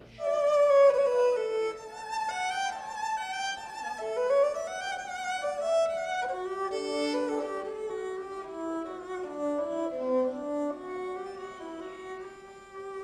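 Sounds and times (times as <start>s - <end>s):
violin melody: 0.0s - 13.0s.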